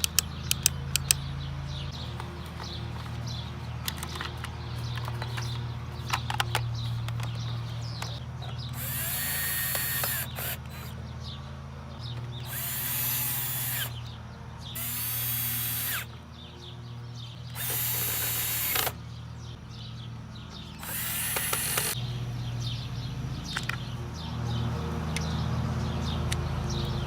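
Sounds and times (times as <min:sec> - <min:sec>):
light clicks: 0:00.0 - 0:01.2
electric drill whining: 0:08.8 - 0:10.9, 0:12.4 - 0:14.0, 0:14.8 - 0:16.1, 0:17.6 - 0:19.0, 0:20.8 - 0:22.0.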